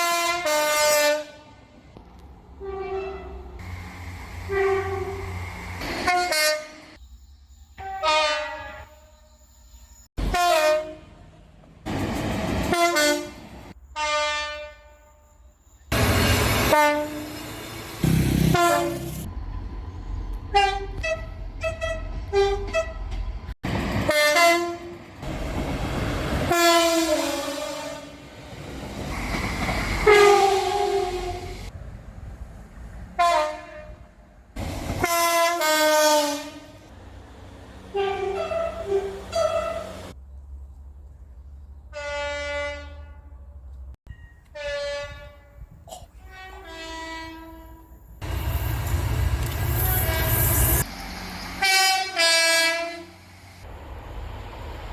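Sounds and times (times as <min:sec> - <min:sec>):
train horn blasts: 0:00.0 - 0:01.8, 0:02.6 - 0:07.0, 0:07.8 - 0:09.4, 0:10.2 - 0:11.5, 0:12.7 - 0:19.3, 0:20.5 - 0:23.0, 0:24.0 - 0:25.1, 0:26.4 - 0:28.3, 0:30.0 - 0:31.7, 0:33.2 - 0:34.1, 0:35.0 - 0:36.9, 0:37.9 - 0:40.1, 0:41.9 - 0:43.6, 0:44.3 - 0:53.5
train running rumble: 0:01.7 - 0:07.0, 0:10.2 - 0:13.8, 0:15.8 - 0:40.9, 0:45.6 - 0:54.9.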